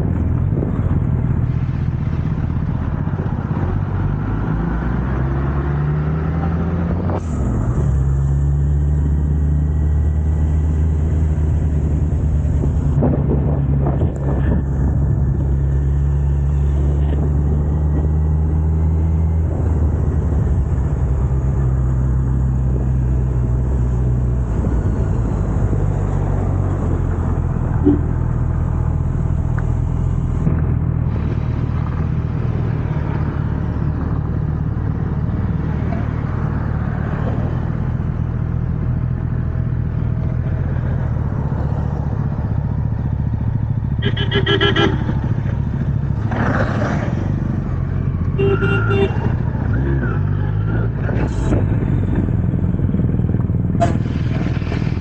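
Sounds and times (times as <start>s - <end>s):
motorcycle engine running: 38.0s - 46.5s, 51.4s - 55.0s.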